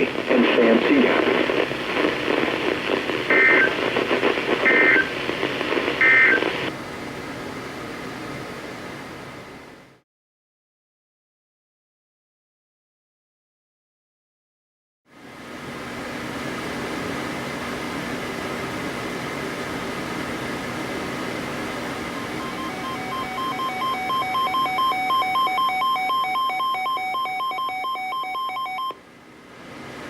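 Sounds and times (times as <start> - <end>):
radio static hiss: 0.0 - 6.7
buzzy two-pitch alarm beeping: 22.2 - 28.9.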